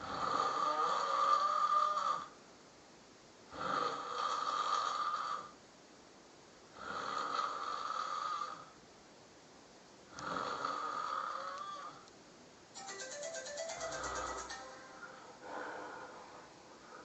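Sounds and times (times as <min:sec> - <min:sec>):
person snoring loudly: 0:00.0 - 0:02.2, 0:06.8 - 0:08.6, 0:10.2 - 0:11.8
quiet breaths: 0:00.0 - 0:02.4, 0:03.4 - 0:08.9, 0:10.0 - 0:12.2, 0:15.0 - 0:17.0.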